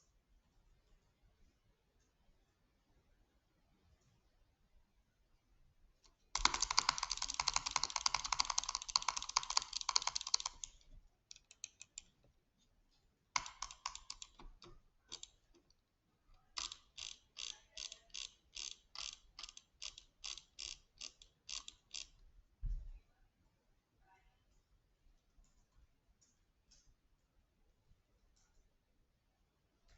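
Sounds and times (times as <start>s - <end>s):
mechanical clicking: 6.4s - 12.1s, 13.4s - 15.8s, 16.4s - 22.2s.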